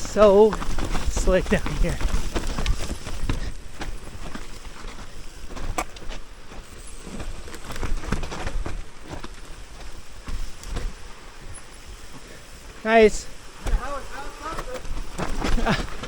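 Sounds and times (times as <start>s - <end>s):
mountain bike rumbling on trail: 0.0s - 16.0s
bike knocks and rattles: 13.6s - 16.0s.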